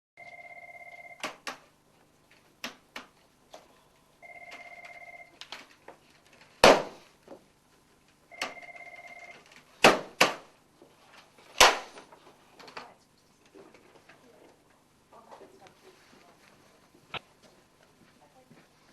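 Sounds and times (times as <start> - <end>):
desk telephone ringing: 0.2 - 1.3, 4.2 - 5.4, 8.3 - 9.4.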